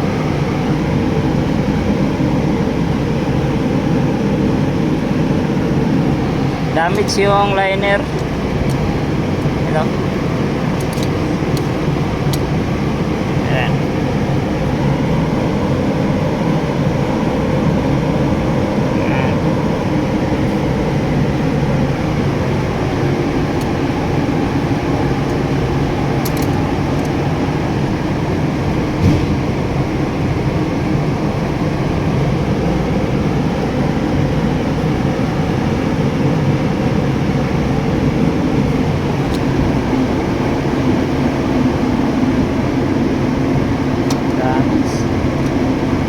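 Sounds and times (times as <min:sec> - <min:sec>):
machine humming: 0:00.0 - 0:46.0.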